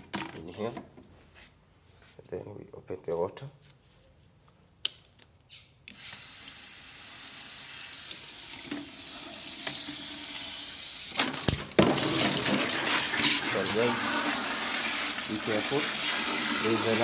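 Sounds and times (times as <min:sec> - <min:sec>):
water rushing into bucket: 0:07.1 - 0:17.0.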